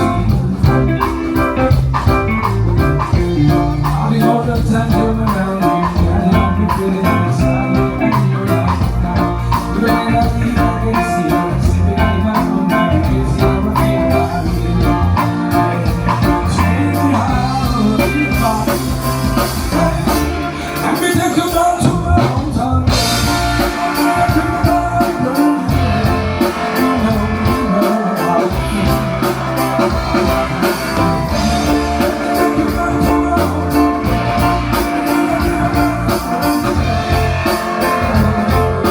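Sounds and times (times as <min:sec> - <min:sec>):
bass guitar: 0:00.0 - 0:38.9
drums: 0:00.0 - 0:38.9
electric guitar: 0:00.0 - 0:38.9
person singing: 0:00.0 - 0:38.9.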